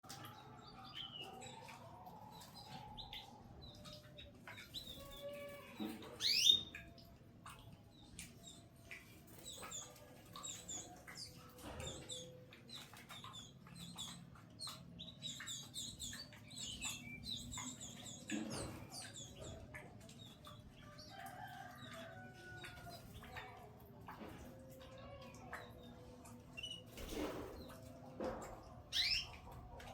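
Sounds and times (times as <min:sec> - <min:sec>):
canaries chirping: 0:02.4 - 0:07.0, 0:28.9 - 0:29.7.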